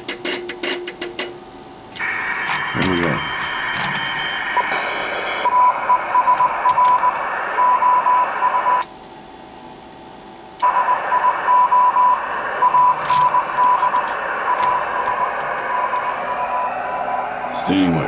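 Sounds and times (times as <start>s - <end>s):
morse code tone: 2.0s - 8.8s, 10.6s - 18.0s
radio band hiss: 2.0s - 8.9s, 10.6s - 18.0s.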